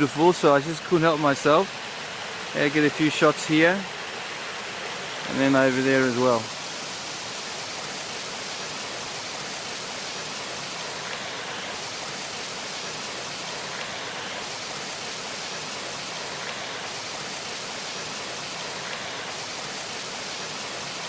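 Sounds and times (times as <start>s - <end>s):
mountain creek rushing: 0.0s - 21.0s.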